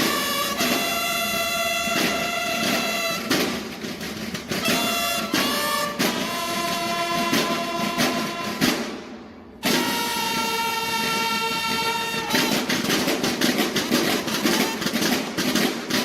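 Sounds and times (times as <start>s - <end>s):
marching drums: 0.0s - 16.0s
bugles holding a long note: 9.6s - 13.0s, 13.9s - 15.2s.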